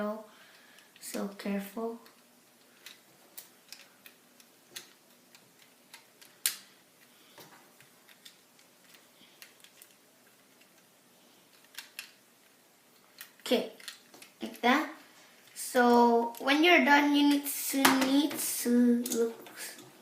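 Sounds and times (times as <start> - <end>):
plastic bricks clicking: 2.0 - 6.7, 11.5 - 12.2, 13.1 - 14.6.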